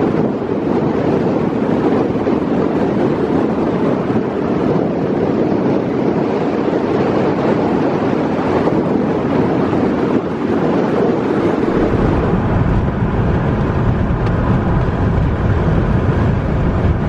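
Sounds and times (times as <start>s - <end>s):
gusty wind rushing: 0.0s - 17.0s
car road noise: 5.7s - 17.0s.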